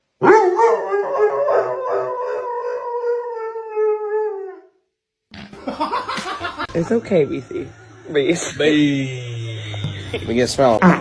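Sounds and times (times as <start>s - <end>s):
dog howling: 0.2s - 4.7s.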